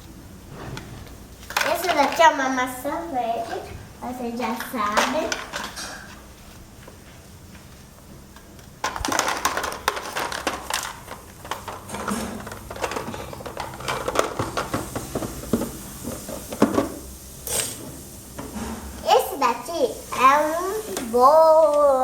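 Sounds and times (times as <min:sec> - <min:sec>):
plastic toy pieces rummaged through: 0:08.8 - 0:14.8.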